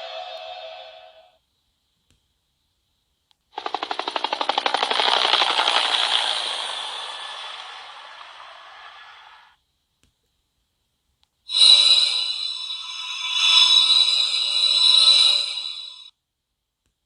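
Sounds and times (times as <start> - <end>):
fast run of ringtone clicks: 3.6 - 9.4.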